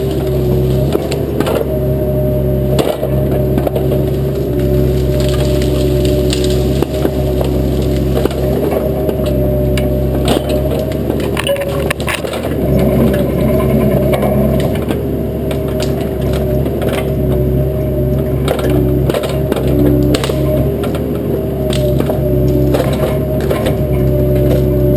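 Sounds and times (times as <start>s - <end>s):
diesel engine running: 0.0s - 24.9s
branches crackling and snapping: 2.6s - 24.9s.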